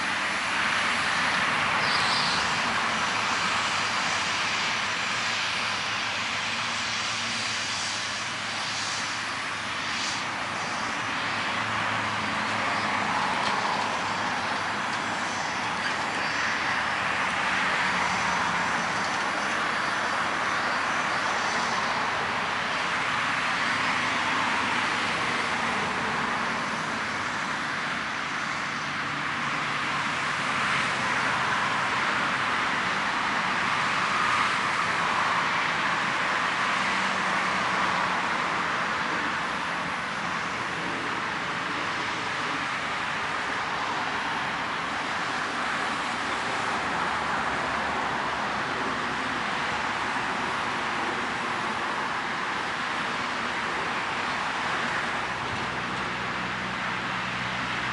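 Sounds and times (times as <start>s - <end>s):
jet aircraft rushing hiss: 0.0s - 29.2s.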